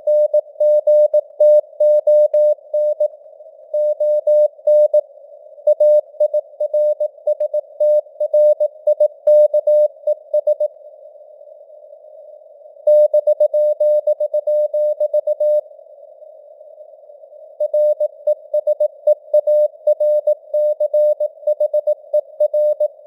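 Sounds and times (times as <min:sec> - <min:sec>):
morse code beeps: 0:17.6 - 0:23.0.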